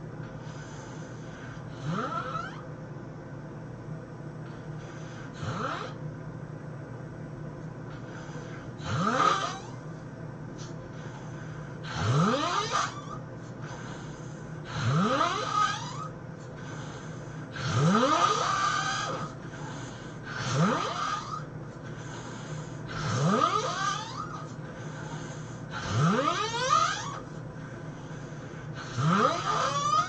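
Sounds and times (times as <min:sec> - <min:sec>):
person snoring loudly: 0:01.6 - 0:02.6, 0:05.3 - 0:06.0, 0:08.2 - 0:09.8, 0:11.8 - 0:21.5, 0:22.1 - 0:27.4, 0:28.7 - 0:30.0.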